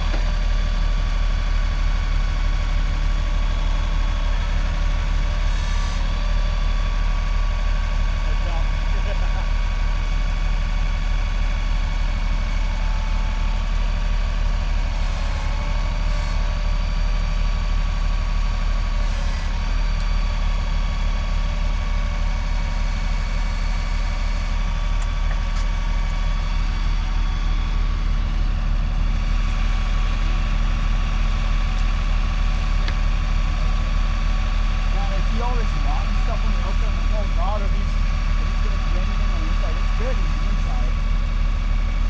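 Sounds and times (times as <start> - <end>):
heavy engine idling: 0.0 - 42.0.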